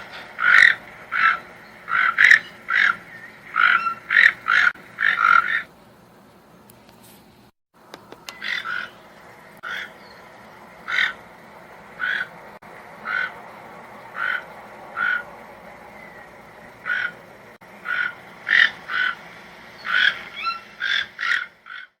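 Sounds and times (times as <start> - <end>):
toucan giving harsh calls: 0.0 - 5.7, 8.2 - 10.1, 10.8 - 11.2, 12.0 - 12.4, 13.0 - 13.4, 14.1 - 22.0
steady background hiss: 0.0 - 22.0.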